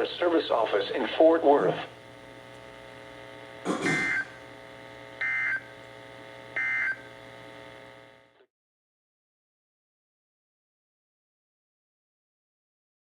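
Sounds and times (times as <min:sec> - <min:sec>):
steady radio hum: 0:00.0 - 0:08.3.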